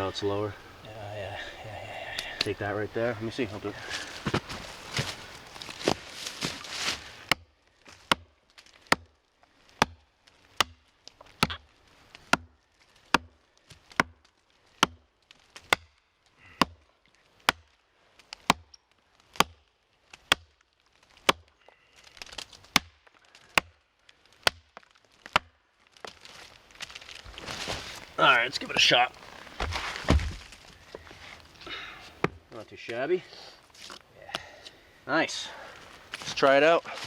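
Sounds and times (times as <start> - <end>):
axe chopping into log: 8.1 - 8.3, 14.0 - 14.2, 22.7 - 22.9, 29.5 - 30.5.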